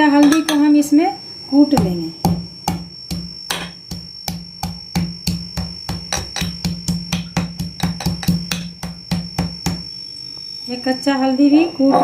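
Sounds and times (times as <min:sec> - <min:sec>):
root being pounded: 0:01.8 - 0:09.9.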